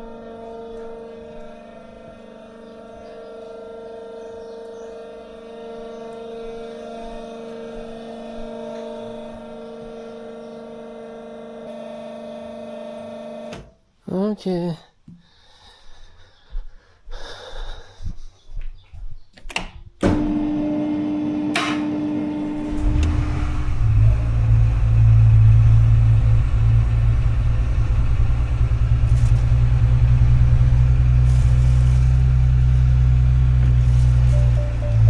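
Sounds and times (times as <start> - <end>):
car engine starting and running: 20.0 - 35.0.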